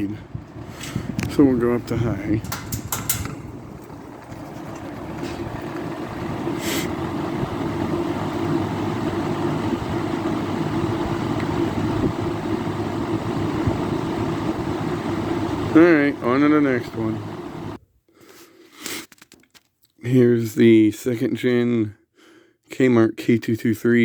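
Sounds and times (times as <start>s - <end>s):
box fan whirring: 0.0s - 17.8s.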